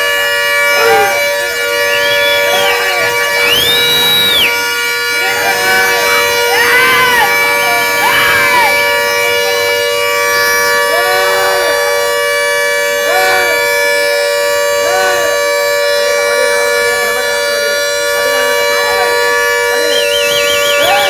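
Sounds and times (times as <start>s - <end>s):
short rising-and-falling cry: 0.8s - 9.1s.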